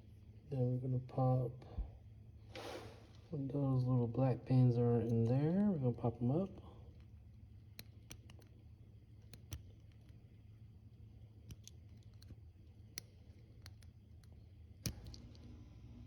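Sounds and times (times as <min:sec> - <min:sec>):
faint low hum: 0:00.0 - 0:16.0
pick tool clicking on connector pins: 0:06.9 - 0:15.4.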